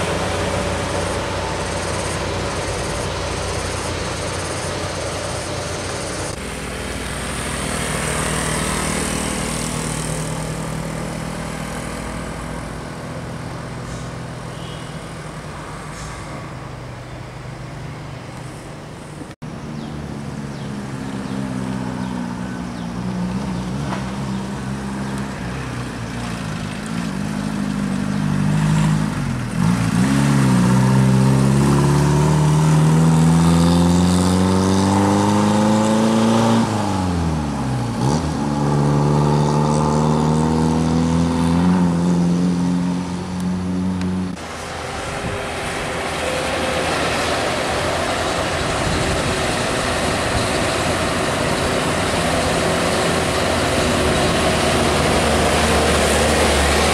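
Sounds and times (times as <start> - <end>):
engine revving: 0.0 - 14.7, 20.5 - 56.9
steady rushing noise: 44.3 - 56.9.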